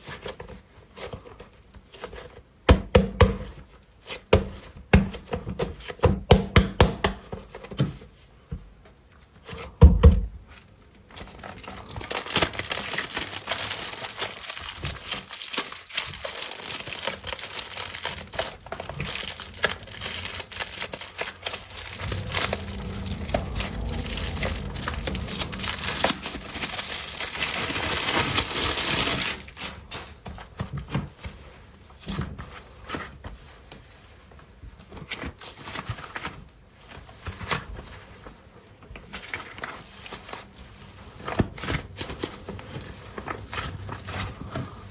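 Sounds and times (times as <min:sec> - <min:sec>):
packaging crinkling and tearing: 0:11.2 - 0:31.2.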